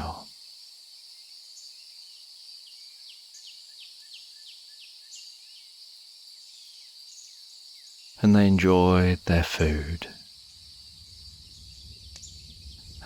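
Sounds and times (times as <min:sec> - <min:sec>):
crickets chirring: 0:00.0 - 0:13.0
bird falling chirps: 0:10.5 - 0:13.0.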